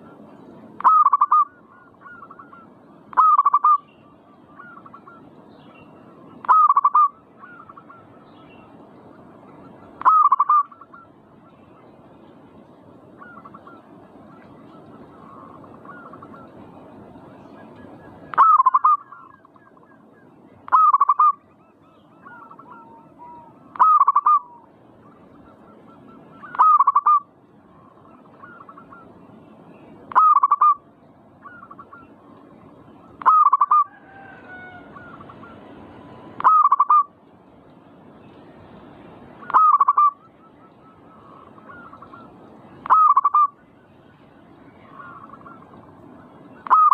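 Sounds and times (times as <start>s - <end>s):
doves cooing: 0.0s - 5.3s, 9.5s - 12.0s, 12.8s - 29.2s, 30.1s - 37.2s, 39.4s - 46.9s.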